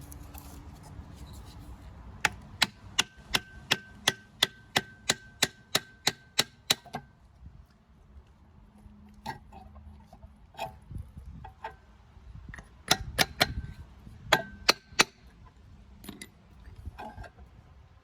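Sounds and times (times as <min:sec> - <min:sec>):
sharp metallic knocks: 0:02.2 - 0:07.0.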